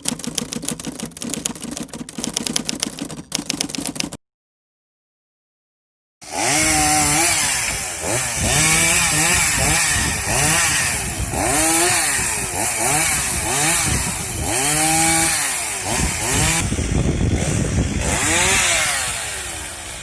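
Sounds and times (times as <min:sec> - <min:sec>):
chainsaw cutting wood: 0:06.2 - 0:20.0.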